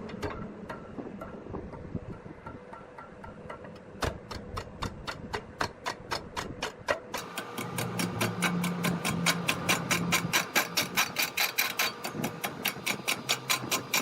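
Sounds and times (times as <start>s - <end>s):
low motor hum: 7.1s - 14.0s.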